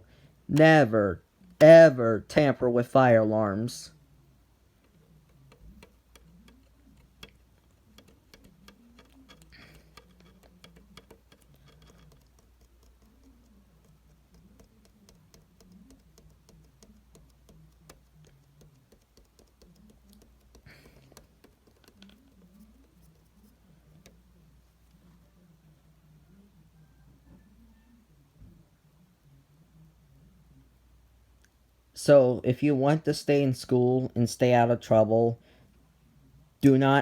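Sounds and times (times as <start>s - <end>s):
faint low murmur: 3.8s - 32.0s
light clicks and taps: 4.8s - 25.1s.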